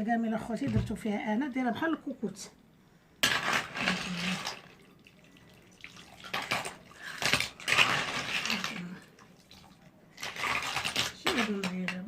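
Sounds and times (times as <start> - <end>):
liquid sloshing in pot: 3.5 - 11.2.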